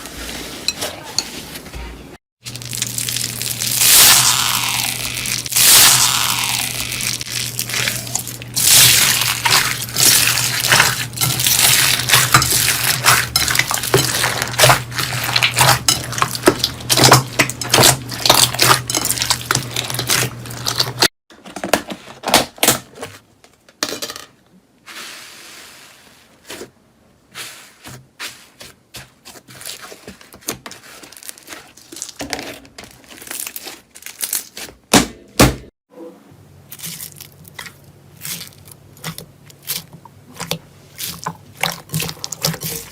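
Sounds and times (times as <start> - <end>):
slime crackling and popping: 2.4 - 21.0.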